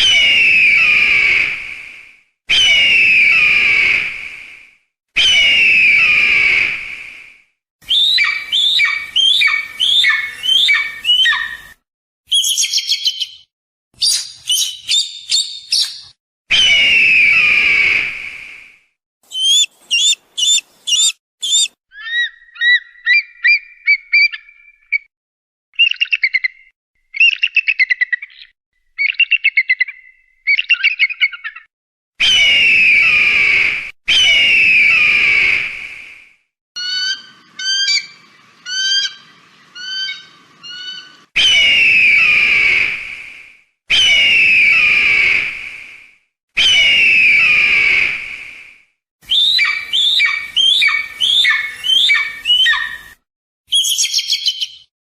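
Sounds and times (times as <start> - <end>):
eagle calls: 7.9 - 11.7, 19.3 - 24.5, 36.8 - 42.8, 49.3 - 53.1.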